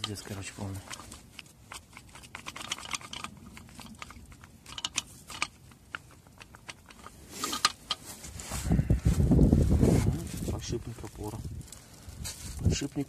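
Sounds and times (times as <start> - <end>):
light metallic clicks and rattles: 0.0 - 8.1
short metal scrape: 7.2 - 8.7.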